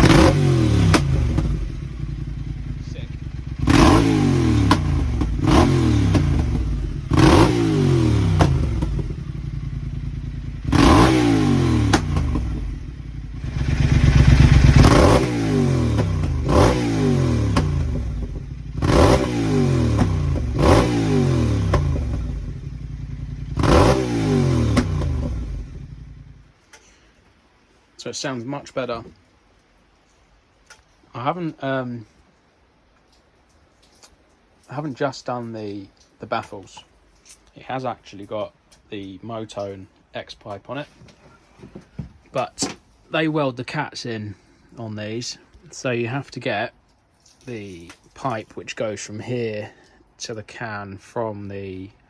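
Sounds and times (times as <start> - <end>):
motorcycle engine revving: 0.0 - 26.5
exhaust crackles and pops: 0.0 - 27.4, 28.6 - 43.7.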